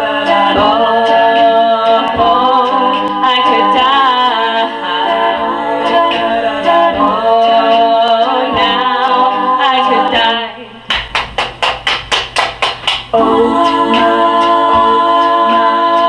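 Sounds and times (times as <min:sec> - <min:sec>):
women singing in harmony: 0:00.0 - 0:10.8, 0:13.1 - 0:16.0
sharp percussive hits: 0:10.9 - 0:14.2.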